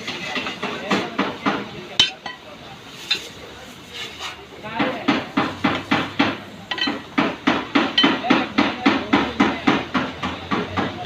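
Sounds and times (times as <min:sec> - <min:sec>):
hammer striking metal: 0:00.0 - 0:02.4, 0:04.8 - 0:11.0.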